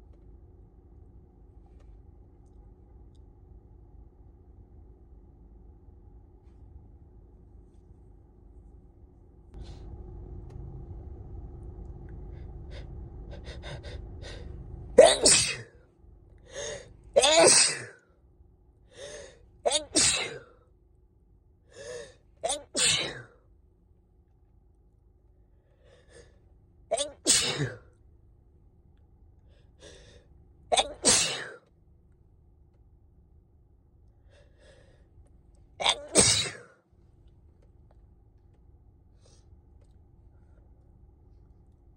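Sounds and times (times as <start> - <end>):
low steady hum: 0.0 - 41.9
person sneezing: 15.0 - 15.7, 16.6 - 18.0, 19.0 - 20.6, 21.8 - 23.4, 26.9 - 27.9, 30.7 - 31.7, 35.8 - 36.8.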